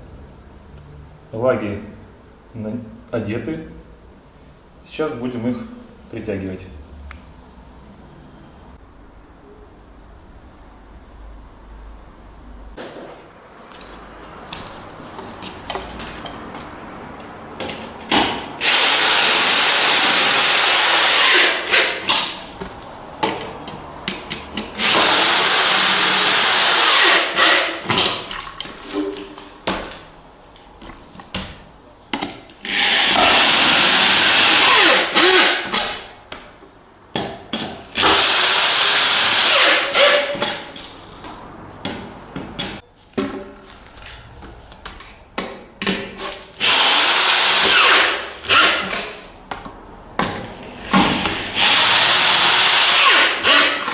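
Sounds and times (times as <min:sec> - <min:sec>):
power drill-driver running: 0:18.6 - 0:22.3, 0:24.8 - 0:27.9, 0:32.6 - 0:36.0, 0:38.0 - 0:40.3, 0:46.6 - 0:49.1, 0:51.4 - 0:53.9.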